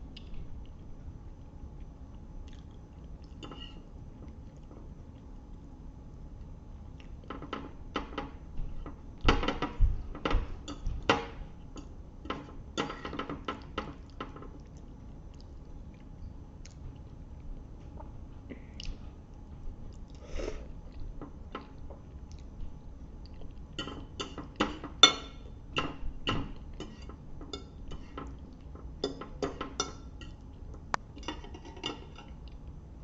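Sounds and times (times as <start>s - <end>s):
wet chewing and smacking: 0.1s - 3.4s, 14.0s - 18.2s, 21.8s - 23.8s.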